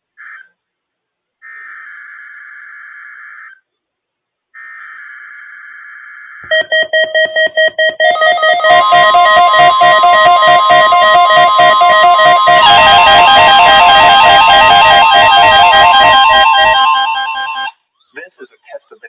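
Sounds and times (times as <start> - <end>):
pulsing electronic tones: 6.5 - 17.7
steady tone: 6.5 - 17.7
digital data tones: 6.5 - 17.8.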